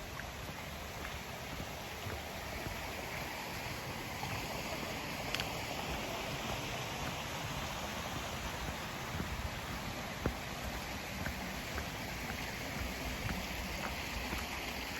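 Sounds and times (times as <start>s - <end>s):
steady rushing noise: 0.0s - 14.9s
faint click: 5.3s - 5.5s.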